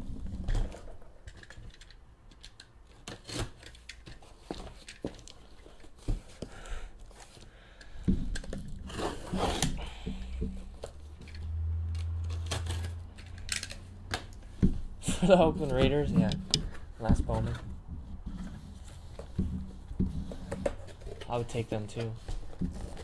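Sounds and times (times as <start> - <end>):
rustling and handling clicks: 0.1 - 23.0
tape and cardboard tearing: 2.8 - 5.3, 8.4 - 16.8.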